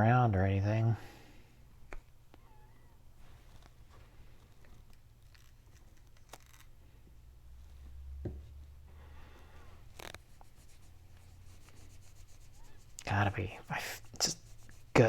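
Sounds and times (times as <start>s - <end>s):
rubbing in hands: 10.0s - 15.0s.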